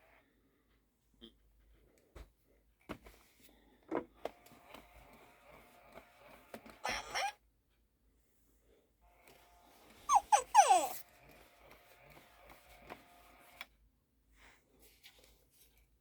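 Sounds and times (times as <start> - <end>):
toy squeaky electronic voice: 6.8 - 7.4, 10.1 - 11.0.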